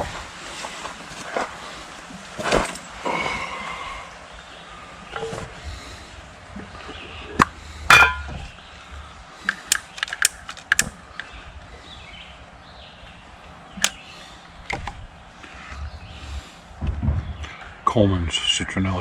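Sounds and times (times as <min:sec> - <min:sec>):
ringing clattering clink: 0:07.9 - 0:08.4.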